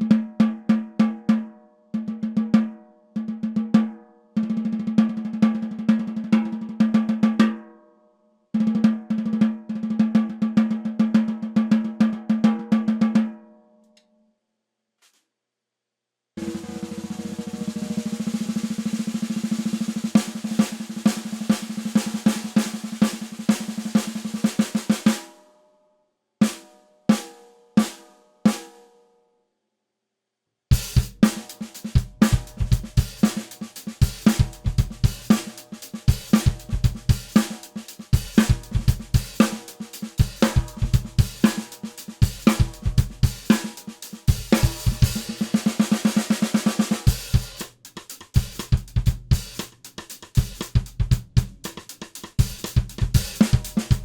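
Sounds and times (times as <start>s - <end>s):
drum kit groove: 16.4s - 25.3s, 26.4s - 28.8s, 30.7s - 54.0s
snare drum strokes: 16.4s - 25.5s, 26.4s - 28.9s, 30.7s - 54.0s
bass drum: 30.8s - 41.6s, 42.2s - 43.7s, 44.3s - 45.5s, 47.0s - 51.8s, 52.4s - 54.0s
hi-hat: 30.8s - 45.5s, 47.0s - 54.0s.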